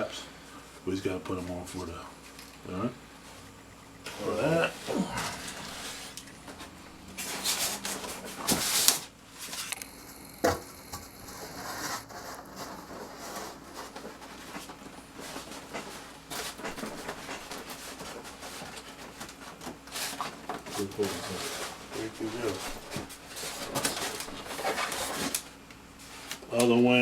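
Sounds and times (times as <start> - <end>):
packaging rustling: 5.1 - 25.5.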